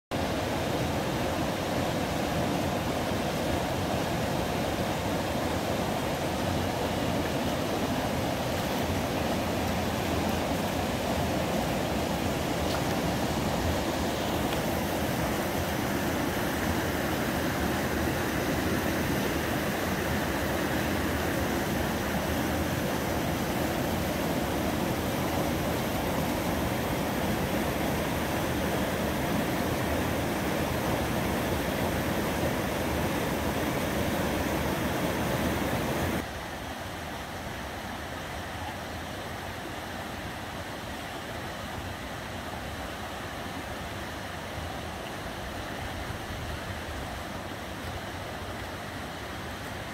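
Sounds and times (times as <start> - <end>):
river rapids rushing: 0.2 - 49.9.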